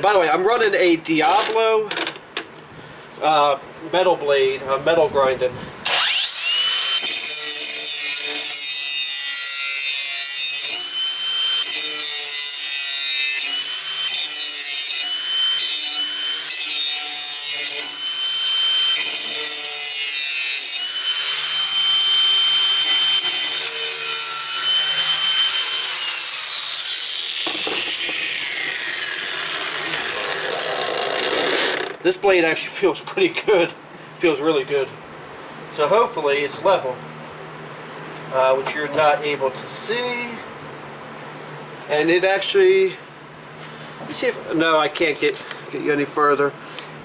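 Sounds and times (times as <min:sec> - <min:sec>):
angle grinder grinding metal: 0:05.8 - 0:32.1
grinder winding down: 0:05.9 - 0:08.6, 0:20.6 - 0:32.1.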